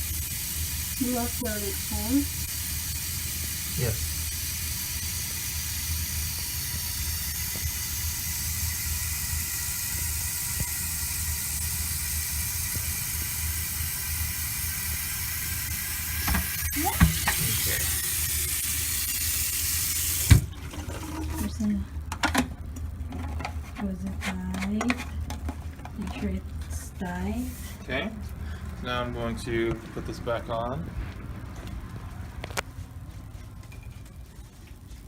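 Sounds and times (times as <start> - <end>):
water tap running: 0.0 - 21.8.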